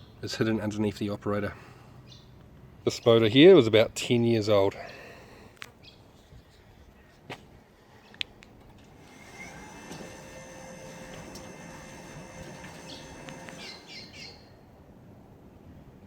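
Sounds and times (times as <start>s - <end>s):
sliding gate motor whining: 8.6s - 14.5s
bird chirps: 12.9s - 14.6s.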